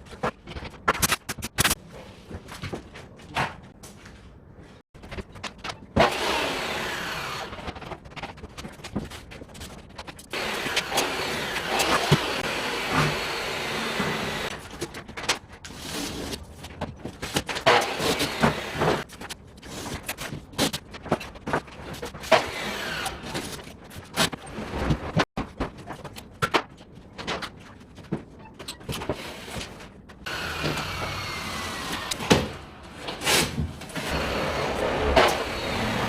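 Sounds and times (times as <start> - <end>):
power tool whirring: 6.0 - 7.6, 10.4 - 14.5, 30.3 - 32.4, 34.0 - 36.0.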